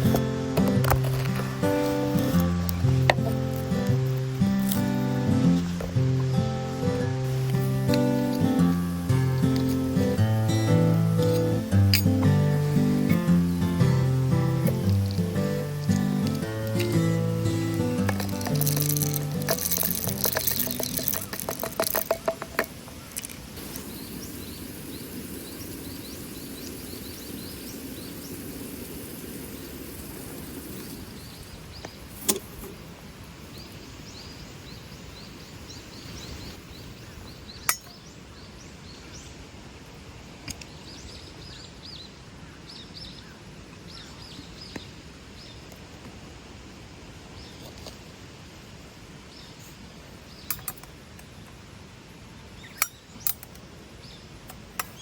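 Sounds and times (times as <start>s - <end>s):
small birds chirping: 0.0s - 39.5s, 40.4s - 45.8s, 49.3s - 50.9s, 52.3s - 55.0s
steady background hiss: 0.0s - 55.0s.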